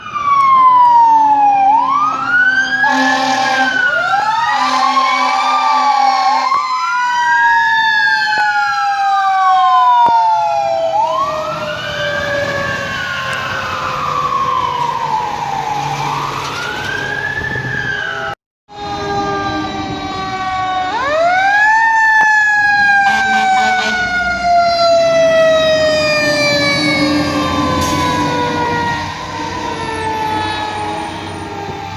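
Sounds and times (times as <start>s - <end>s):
electronic siren wailing: 0.0s - 31.9s
mechanical siren winding down: 0.0s - 31.9s
air horn blasts: 2.7s - 6.6s, 23.0s - 24.2s
heavy truck engine rumbling: 22.9s - 31.9s.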